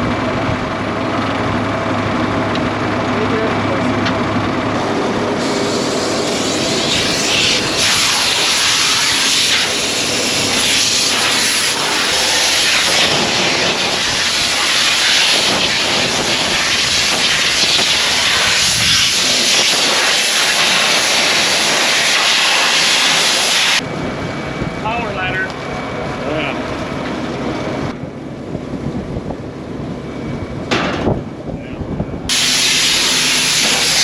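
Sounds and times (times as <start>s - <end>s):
compressed air blasting hiss: 4.9s - 23.8s, 32.3s - 34.0s.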